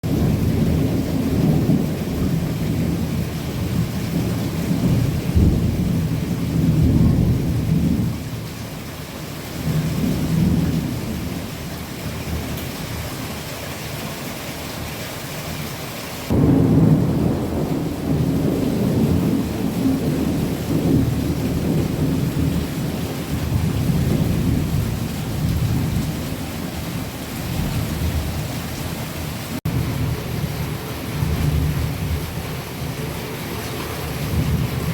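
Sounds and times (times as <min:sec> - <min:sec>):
rolling thunder: 0:00.0 - 0:08.4, 0:16.3 - 0:28.6, 0:29.6 - 0:33.2, 0:34.0 - 0:34.9
torrential rain: 0:00.0 - 0:34.9.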